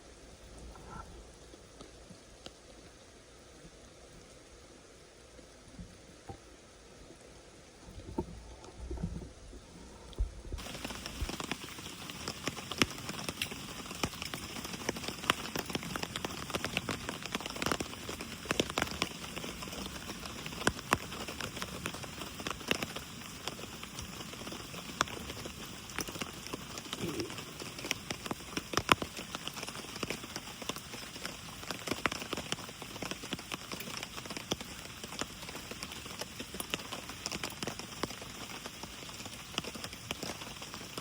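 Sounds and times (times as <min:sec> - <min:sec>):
steady rain falling: 0:00.0 - 0:41.0
raindrops tapping sharply: 0:10.6 - 0:41.0.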